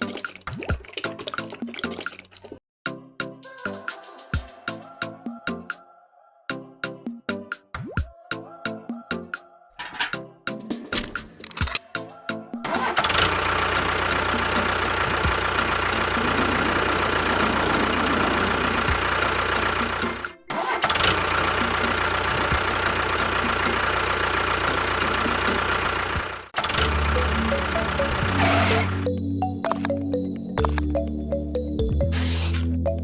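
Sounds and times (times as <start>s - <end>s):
motor humming and whining: 13.2s - 20.2s.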